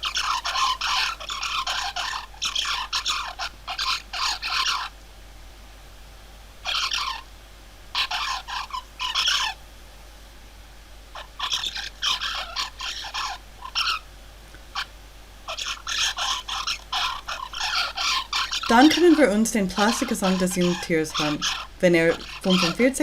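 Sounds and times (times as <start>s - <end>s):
young finch scratchy singing: 0.0s - 4.9s, 6.6s - 7.3s, 8.0s - 9.6s, 11.2s - 14.0s, 15.5s - 23.0s.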